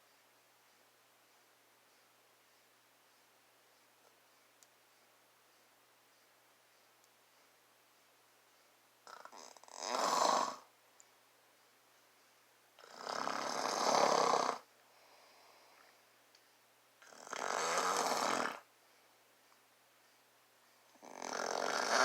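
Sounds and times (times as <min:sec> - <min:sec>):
man snoring: 0:09.1 - 0:10.7, 0:12.8 - 0:14.6, 0:17.0 - 0:18.6, 0:21.0 - 0:22.0.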